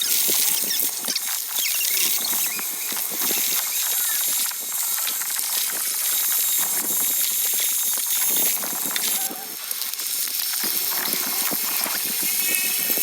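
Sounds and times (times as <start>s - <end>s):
steady hiss: 0.0s - 13.0s
short squeaks: 0.4s - 4.3s.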